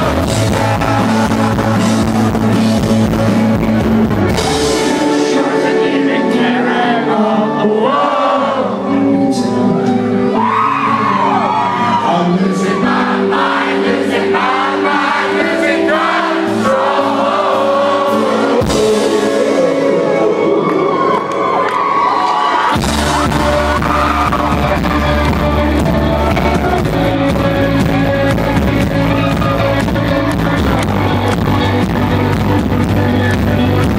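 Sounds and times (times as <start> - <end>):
person singing: 0.0 - 21.5
rock band playing live: 0.0 - 33.9.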